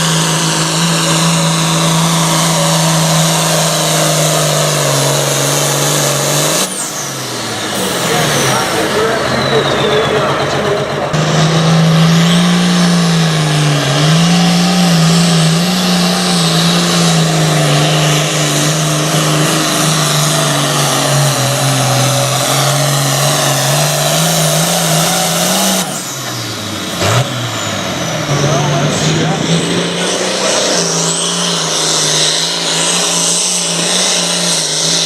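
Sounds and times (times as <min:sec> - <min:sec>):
diesel tractor engine revving hard: 0:00.0 - 0:35.0.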